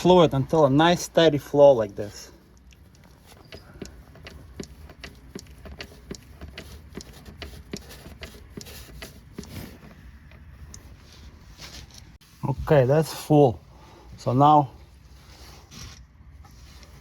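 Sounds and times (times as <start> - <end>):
hand pump clicking: 2.5 - 10.9.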